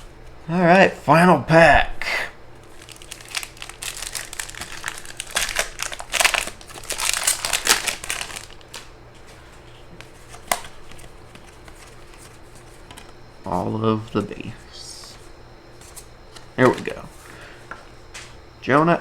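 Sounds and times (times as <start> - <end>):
wrapper crinkling: 2.6 - 8.9.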